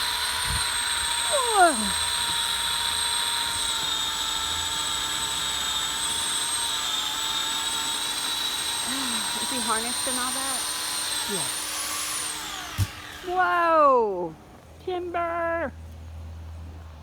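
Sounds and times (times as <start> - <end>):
high-pitched machine whine: 0.0 - 13.4.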